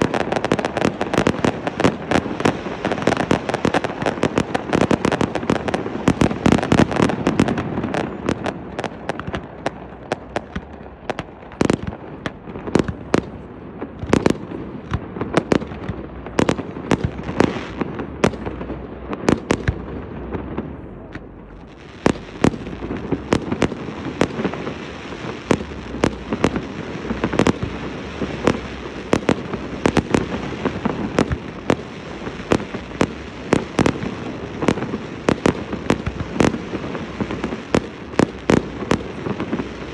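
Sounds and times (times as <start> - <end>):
fireworks bangs: 0.0 - 39.9
low rumble: 15.6 - 33.5.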